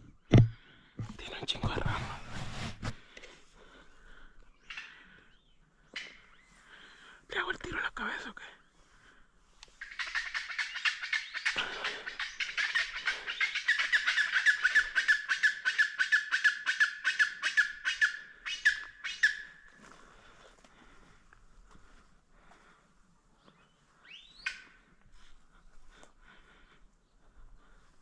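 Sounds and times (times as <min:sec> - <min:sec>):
birds calling in harsh chorus: 0:03.7 - 0:07.3, 0:08.0 - 0:20.2, 0:23.4 - 0:28.0.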